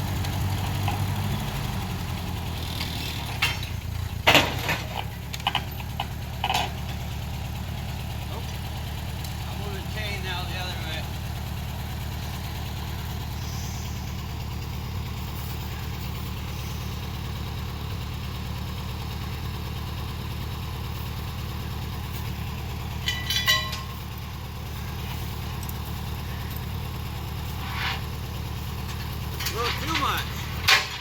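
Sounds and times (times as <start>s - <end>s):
engine idling: 0.0s - 31.0s
metallic ringing clatter: 22.1s - 26.7s.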